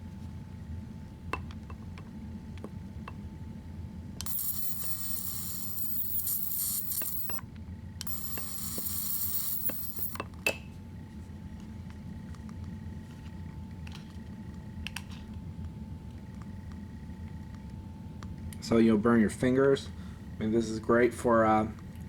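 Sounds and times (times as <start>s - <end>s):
electric arc lighter buzzing hiss: 4.2s - 7.4s, 8.0s - 10.2s.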